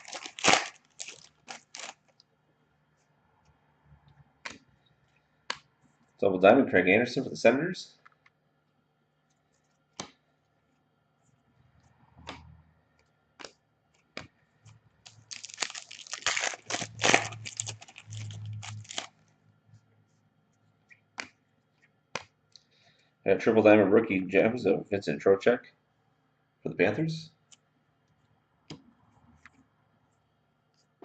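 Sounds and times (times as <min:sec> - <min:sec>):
wrapper tearing and crinkling: 0:00.0 - 0:02.1, 0:15.0 - 0:19.1.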